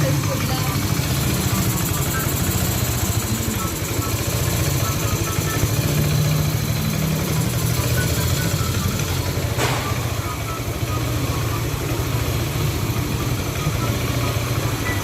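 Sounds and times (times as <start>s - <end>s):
scooter engine idling: 0.0s - 15.0s.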